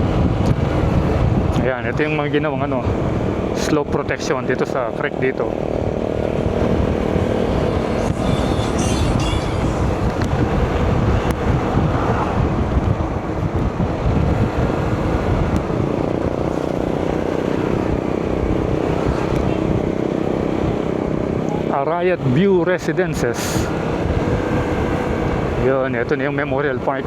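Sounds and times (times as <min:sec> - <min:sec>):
wind rumbling on microphone: 0:00.0 - 0:22.3, 0:23.0 - 0:27.0
motorcycle engine: 0:04.7 - 0:21.5.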